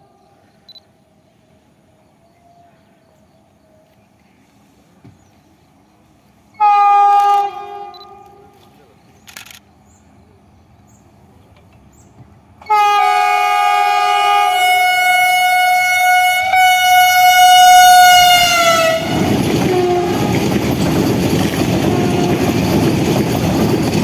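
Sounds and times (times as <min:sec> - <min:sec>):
train rumbling past on rails: 0:00.0 - 0:24.0
train horn: 0:06.5 - 0:08.7, 0:12.6 - 0:20.6, 0:21.7 - 0:22.9.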